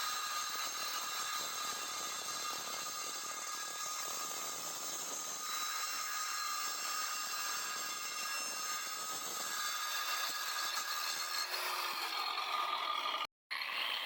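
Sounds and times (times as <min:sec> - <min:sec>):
angle grinder cutting: 0:00.0 - 0:14.0.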